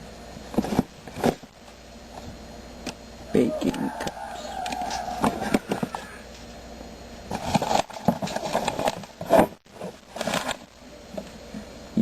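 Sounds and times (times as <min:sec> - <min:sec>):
packages and cans being moved: 0:04.0 - 0:06.5, 0:07.3 - 0:10.7.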